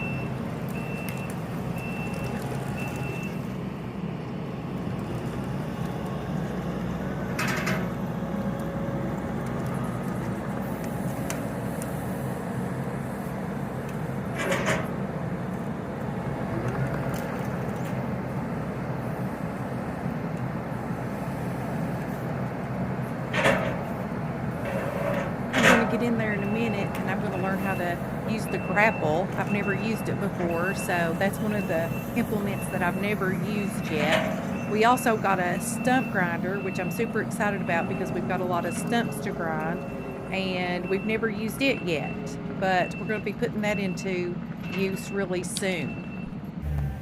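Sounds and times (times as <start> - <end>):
reversing alarm beeps: 0.0 - 3.5, 24.6 - 47.0
skid steer loader running: 0.0 - 47.0.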